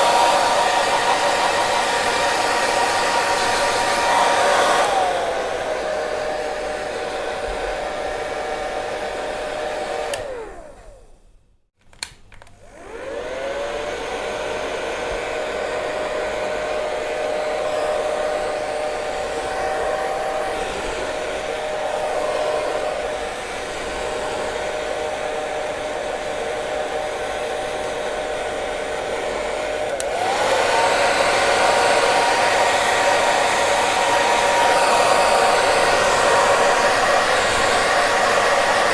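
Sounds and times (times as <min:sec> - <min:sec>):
hair dryer whining: 0:00.0 - 0:11.3, 0:12.0 - 0:38.9
hair dryer switch click: 0:10.0 - 0:10.4, 0:11.9 - 0:12.6, 0:29.8 - 0:30.5.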